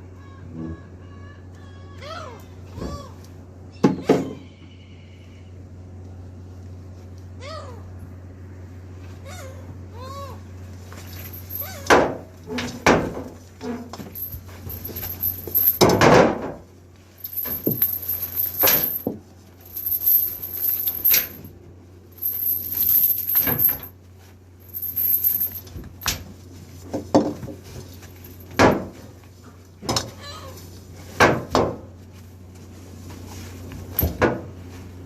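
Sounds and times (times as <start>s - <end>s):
fishing gear clinking and rattling: 11.0s - 11.9s, 14.0s - 15.9s, 17.2s - 21.5s, 22.2s - 23.9s, 24.6s - 26.2s.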